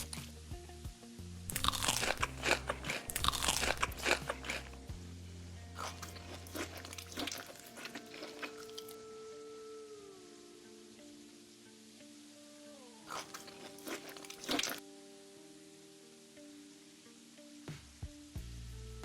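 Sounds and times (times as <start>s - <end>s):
soft background music: 0.0s - 19.0s
crunchy food being chewed: 1.5s - 4.8s, 5.8s - 9.0s, 13.1s - 14.8s.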